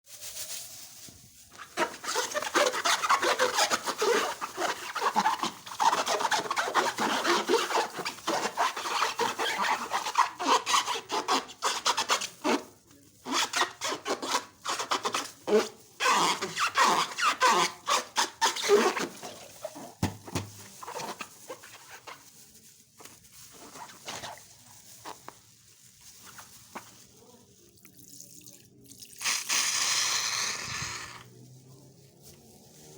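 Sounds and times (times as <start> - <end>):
balloons rubbed and squeaking: 0.1 - 27.3, 29.2 - 32.9.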